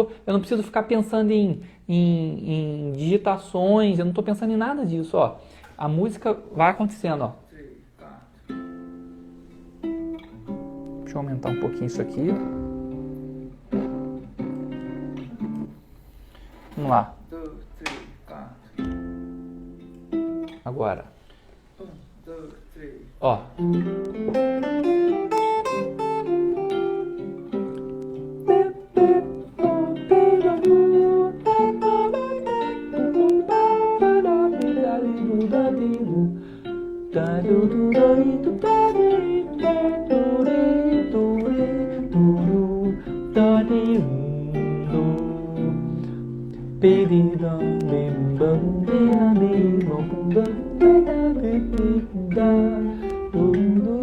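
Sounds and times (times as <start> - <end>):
guitar improvising melodic lines: 0.0 - 54.0
backing track music: 8.5 - 17.0, 23.6 - 54.0.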